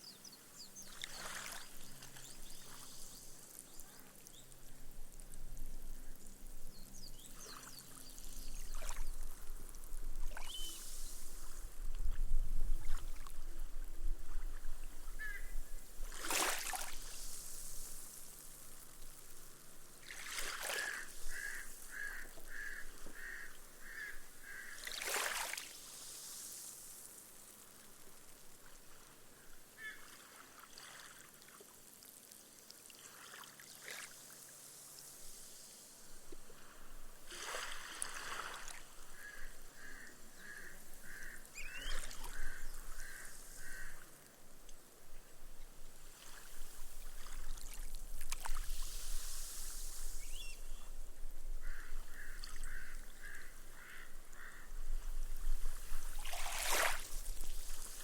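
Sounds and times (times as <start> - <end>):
small waves washing on sand: 16.0 - 22.2, 24.0 - 29.2, 30.0 - 40.0, 46.0 - 50.3, 55.6 - 58.0.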